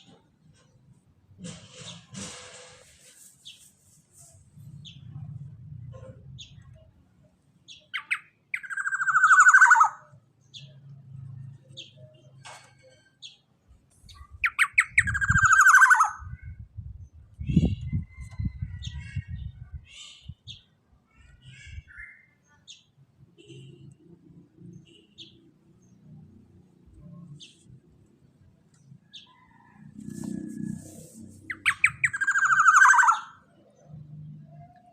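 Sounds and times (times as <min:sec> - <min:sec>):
bird harsh descending calls: 0:08.0 - 0:10.0, 0:31.4 - 0:33.4.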